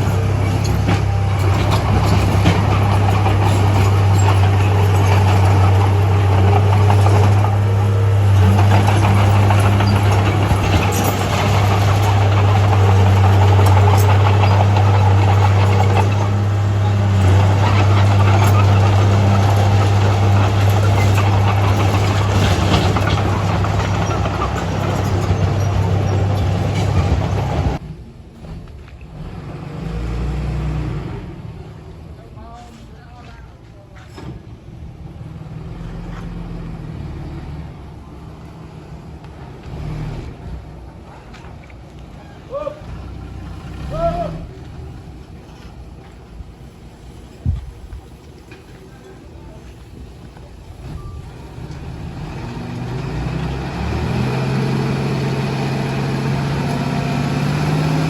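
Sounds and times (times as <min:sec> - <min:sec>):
heavy diesel engine droning: 0:00.0 - 0:33.1, 0:42.2 - 0:47.4, 0:48.7 - 0:58.0.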